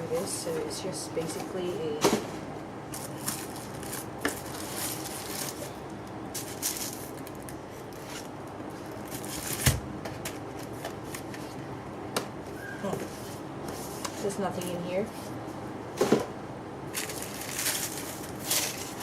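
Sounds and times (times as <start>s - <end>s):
rustling of packaging: 2.9s - 11.6s, 16.9s - 19.0s.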